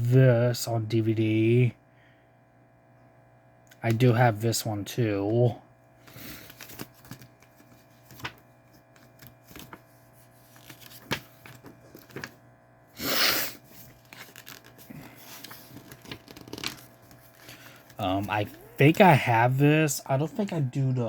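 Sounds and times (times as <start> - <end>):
steady electrical hum: 0.0 - 21.0
packaging rustle: 6.1 - 12.4, 13.6 - 19.2.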